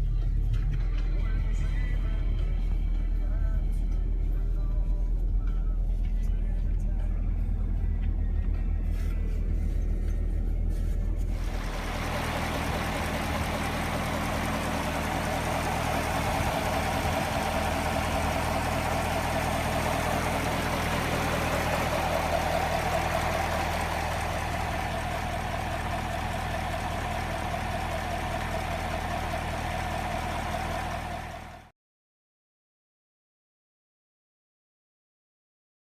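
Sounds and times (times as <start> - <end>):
car engine idling: 11.3 - 31.7.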